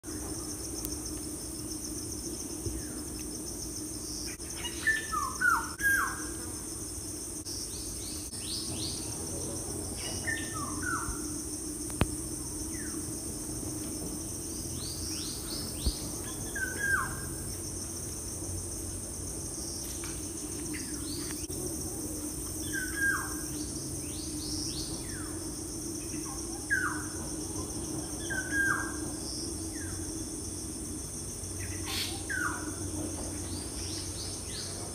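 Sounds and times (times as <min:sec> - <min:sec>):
songbirds whistling: 0:31.6 - 0:32.8.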